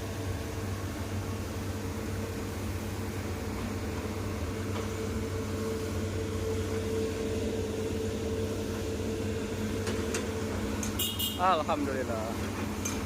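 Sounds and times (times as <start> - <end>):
constant high hum: 0.0 - 13.0
excavator diesel engine running: 0.0 - 13.0.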